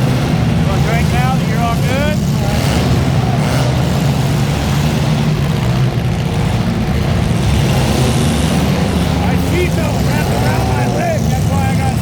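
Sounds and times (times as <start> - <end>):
car engine running: 0.0 - 12.0.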